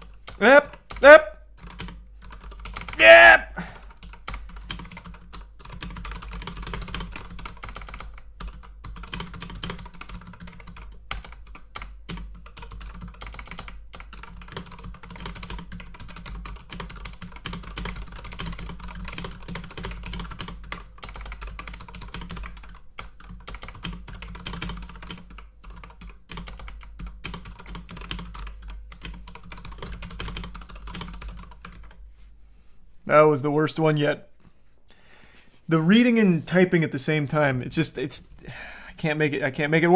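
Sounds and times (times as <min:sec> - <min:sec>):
fast typing on a keyboard: 0:00.0 - 0:03.0, 0:03.7 - 0:32.0.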